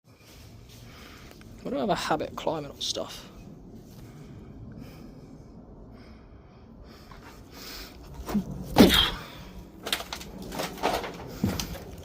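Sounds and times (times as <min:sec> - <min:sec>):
person grunting with effort: 0:08.2 - 0:09.5.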